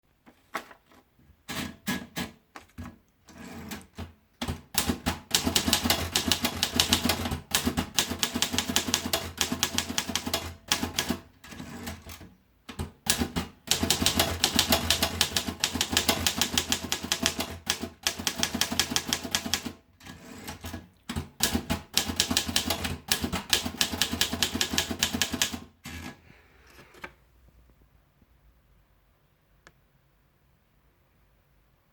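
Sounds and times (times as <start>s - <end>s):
manual typewriter keystrokes: 1.5s - 26.2s.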